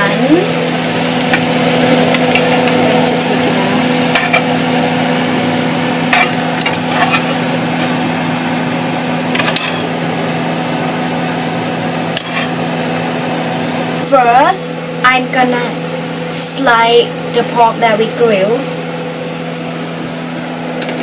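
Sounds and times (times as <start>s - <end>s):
meat sizzling in a pan: 0.0s - 10.1s
steady hum: 0.0s - 21.0s.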